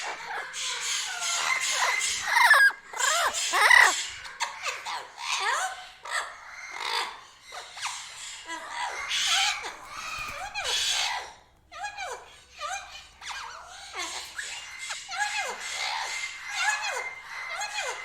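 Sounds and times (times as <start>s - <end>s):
parrots squawking: 0.0s - 18.0s.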